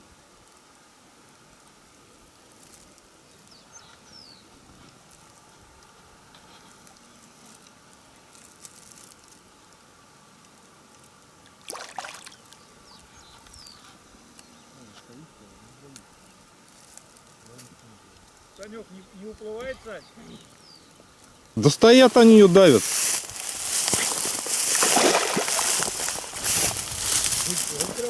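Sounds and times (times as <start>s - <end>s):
faint trickle of water: 11.0s - 13.6s.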